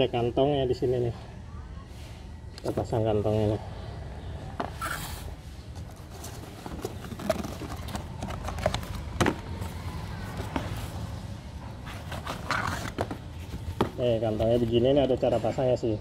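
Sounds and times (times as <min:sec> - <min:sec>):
plastic and paper clicks: 0:06.2 - 0:09.8.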